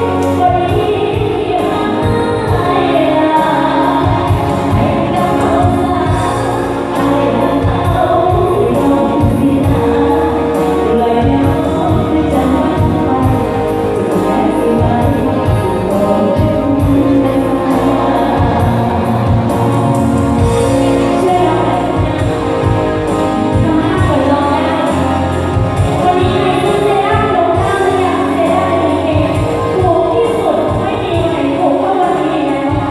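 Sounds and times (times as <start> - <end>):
live band playing: 0.0 - 32.9
person singing: 0.0 - 32.9
driving drumbeat: 14.8 - 31.6.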